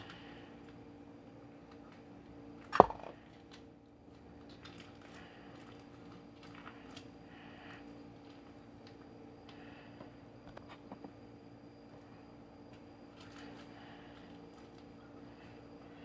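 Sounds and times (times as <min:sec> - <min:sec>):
sharp pop: 0:02.8 - 0:03.1.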